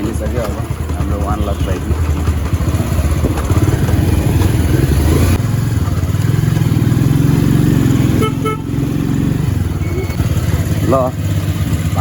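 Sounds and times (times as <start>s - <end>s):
motorcycle engine running: 0.0s - 12.0s
short high beeps: 9.8s - 10.2s.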